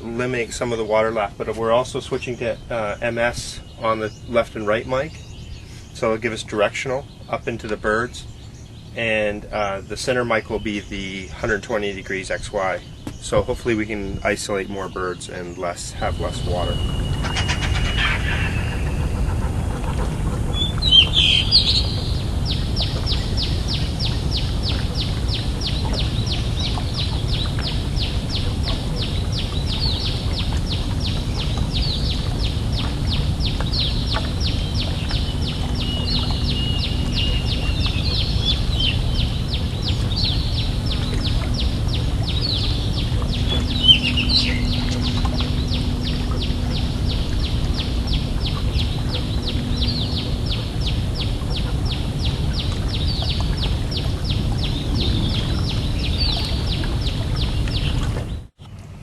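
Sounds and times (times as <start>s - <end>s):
birds calling: 0.0s - 58.8s
low hum: 0.0s - 59.0s
low rumble: 15.8s - 58.6s.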